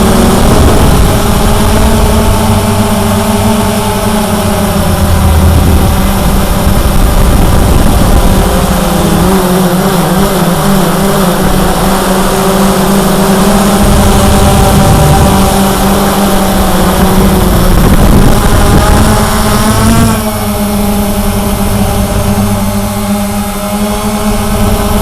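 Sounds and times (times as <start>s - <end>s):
drone motors humming: 0.0s - 25.0s
low rumble: 0.3s - 8.7s.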